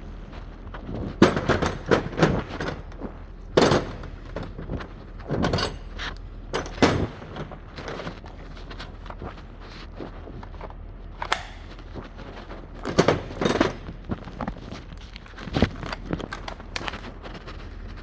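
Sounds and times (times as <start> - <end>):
power tool clunking and rattling: 1.1 - 8.2, 11.2 - 11.9, 12.8 - 14.0.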